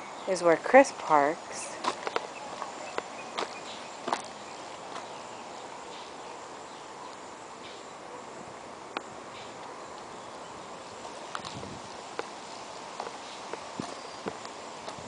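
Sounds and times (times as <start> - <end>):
steady background hiss: 0.0 - 15.0
sharp short footsteps: 1.7 - 5.2, 11.0 - 15.0.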